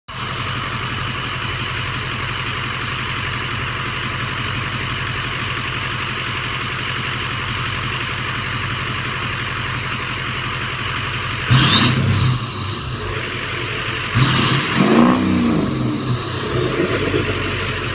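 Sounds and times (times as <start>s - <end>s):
diesel engine idling and revving: 0.1s - 17.9s
turbo whistle: 11.5s - 17.9s.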